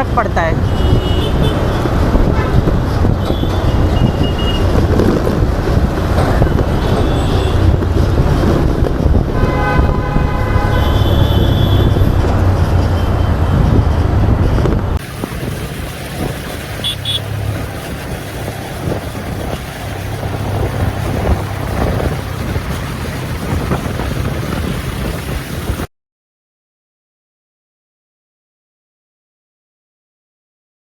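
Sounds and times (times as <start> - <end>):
motorcycle engine and wind rumble: 0.0 - 25.9
vehicle horn: 0.6 - 1.8, 3.2 - 4.7, 6.7 - 7.8, 9.3 - 12.2, 16.8 - 17.4.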